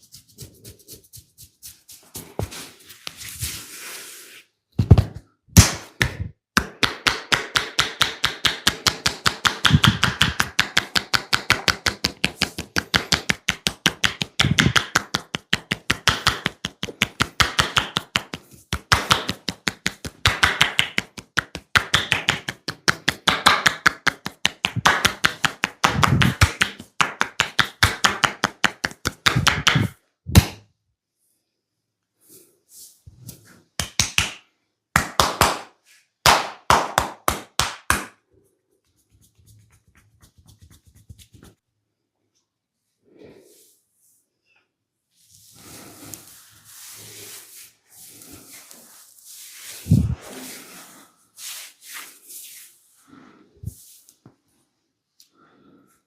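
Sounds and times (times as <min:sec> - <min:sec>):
hands slapping on body: 0:04.8 - 0:30.7, 0:33.8 - 0:38.2, 0:39.1 - 0:41.6.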